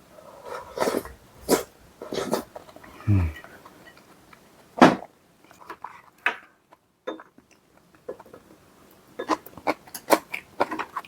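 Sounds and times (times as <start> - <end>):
cutlery and dishes clinking: 7.1 - 7.5, 9.2 - 11.0.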